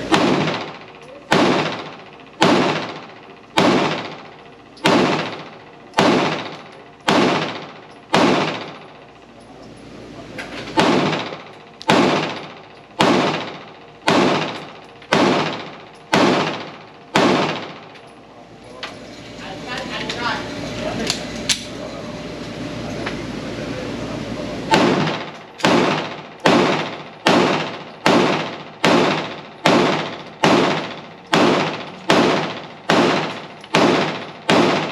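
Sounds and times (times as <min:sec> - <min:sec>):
pistol shots with echo: 0:00.0 - 0:08.8, 0:10.7 - 0:17.9, 0:24.7 - 0:34.9.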